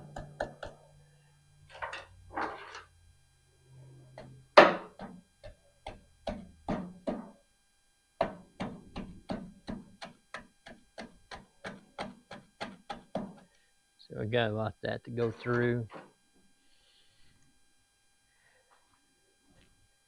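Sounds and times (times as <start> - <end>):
hand tool scraping grease: 1.7 - 2.9.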